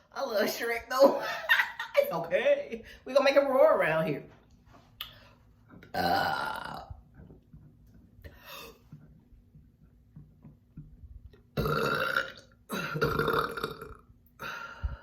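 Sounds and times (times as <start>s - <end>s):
loud drawn-out burps: 5.8s - 7.0s, 11.6s - 14.1s.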